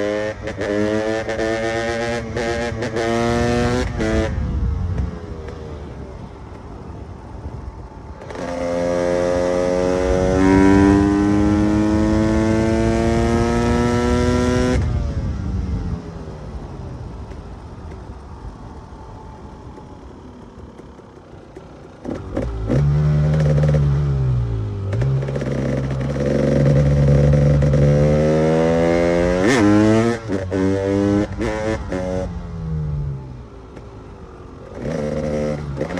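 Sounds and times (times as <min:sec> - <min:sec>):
two-stroke engine: 0:14.8 - 0:32.8.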